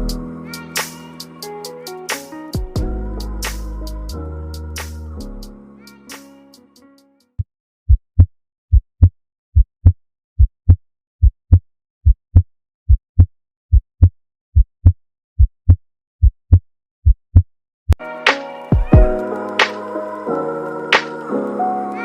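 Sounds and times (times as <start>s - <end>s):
music: 0.0s - 7.4s, 18.0s - 22.0s
heartbeat through stethoscope: 7.9s - 17.5s.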